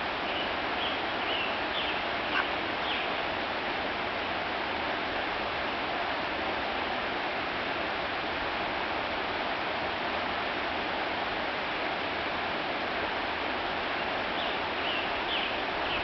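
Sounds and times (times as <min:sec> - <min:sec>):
creek water flowing: 0:00.0 - 0:16.0.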